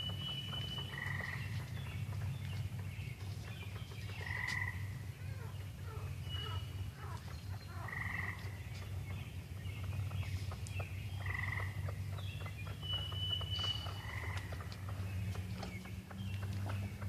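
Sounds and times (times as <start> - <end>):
frogs calling: 0.0 - 2.7, 4.1 - 8.6, 11.1 - 17.0
birds chirping: 0.0 - 17.0
steady low hum: 0.0 - 17.0.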